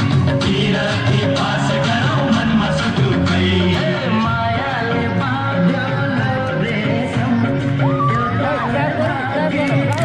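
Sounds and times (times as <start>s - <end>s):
pop music with singing: 0.0s - 10.0s.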